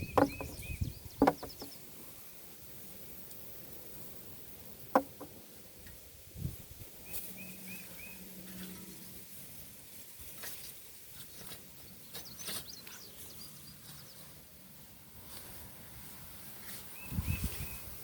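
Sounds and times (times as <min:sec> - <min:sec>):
birds chirping: 0:00.0 - 0:01.9, 0:11.8 - 0:14.3
digging in garden soil: 0:07.0 - 0:18.0.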